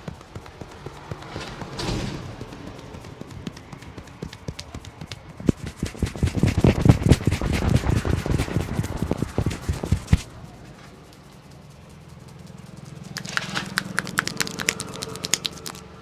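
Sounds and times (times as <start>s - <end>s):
hands tapping and slapping head: 3.2s - 10.3s, 13.2s - 15.8s.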